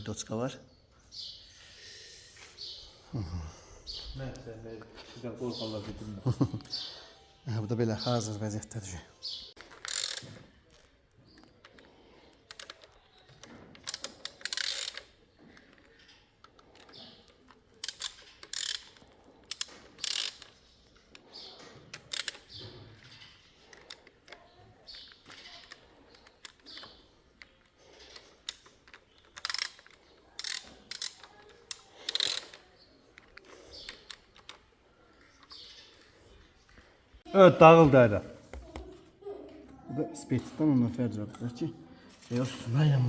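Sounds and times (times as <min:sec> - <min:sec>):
ratchet clicking: 0:09.6 - 0:10.4, 0:12.5 - 0:15.8, 0:16.5 - 0:20.6, 0:21.9 - 0:27.0, 0:27.6 - 0:32.6.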